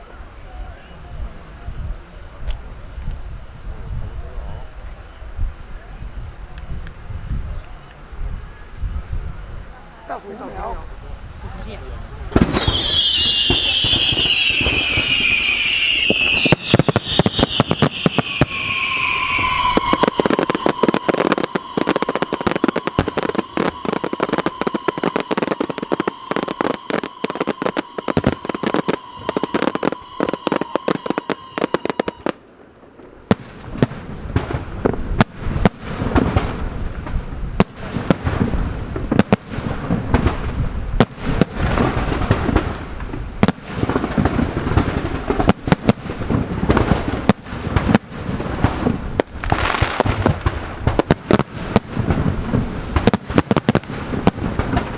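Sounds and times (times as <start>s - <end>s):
deep fireworks booms: 0.0s - 54.9s
fireworks bangs and crackles: 0.0s - 54.9s
whistle-like tone: 12.5s - 32.1s.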